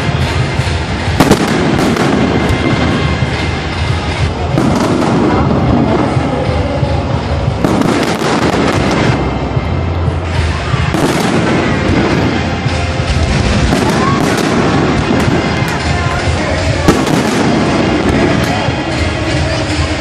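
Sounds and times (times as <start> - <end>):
fireworks bangs and crackles: 0.0 - 20.0.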